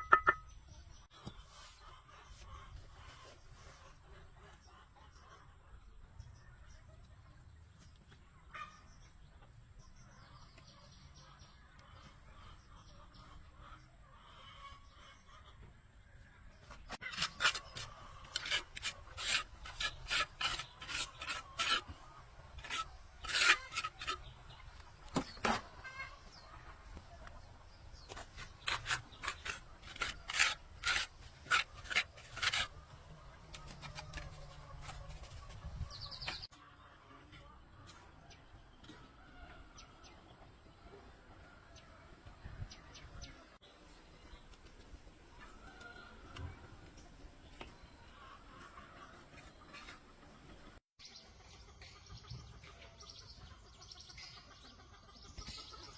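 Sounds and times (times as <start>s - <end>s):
repeated scraping strokes: 16.6s - 38.2s, 47.5s - 50.8s.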